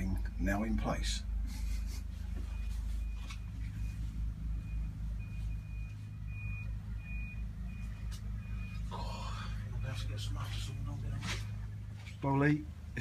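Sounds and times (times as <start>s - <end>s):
low engine rumble: 0.0s - 13.0s
reversing alarm beeping: 2.4s - 11.8s.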